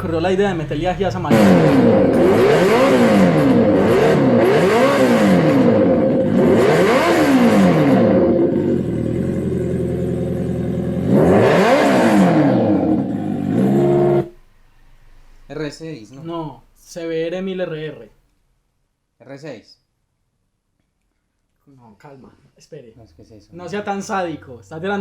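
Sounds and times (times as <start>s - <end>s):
motorcycle engine revving and idling: 0.0s - 14.4s.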